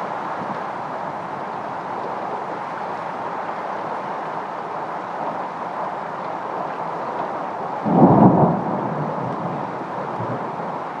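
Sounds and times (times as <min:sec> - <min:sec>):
windy rainstorm rushing: 0:04.7 - 0:11.0
low thunder rumbles: 0:07.9 - 0:11.0.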